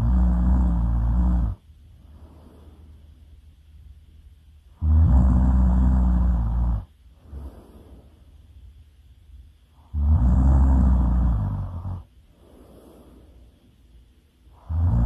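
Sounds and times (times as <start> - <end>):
person snoring loudly: 0.0 - 1.6, 4.8 - 7.6, 9.8 - 12.1, 14.5 - 15.0.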